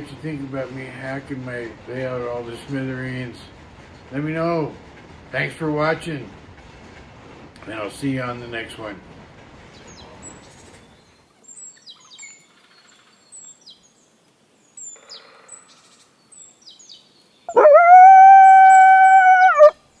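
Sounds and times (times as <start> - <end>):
high falling bird chirps: 17.5 - 19.7
loud howl: 17.5 - 19.7.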